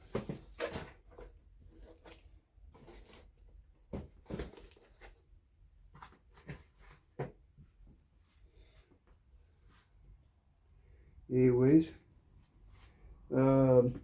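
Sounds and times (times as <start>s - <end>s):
cardboard packaging rustling: 0.0s - 7.4s.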